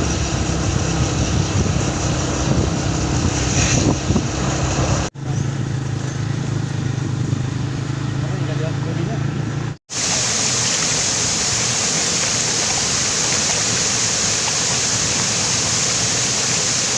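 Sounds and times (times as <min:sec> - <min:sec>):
rushing noise: 0:00.0 - 0:05.1, 0:09.9 - 0:16.9
engine running: 0:00.0 - 0:16.9.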